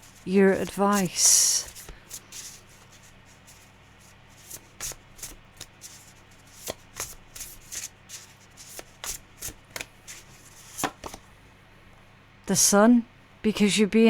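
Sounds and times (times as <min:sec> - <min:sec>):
cards being shuffled: 0:00.0 - 0:11.3.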